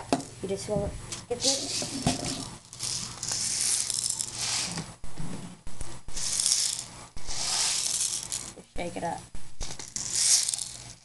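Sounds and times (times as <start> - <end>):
plastic pellets rattling: 1.4 - 4.8, 6.1 - 8.6, 9.6 - 11.0.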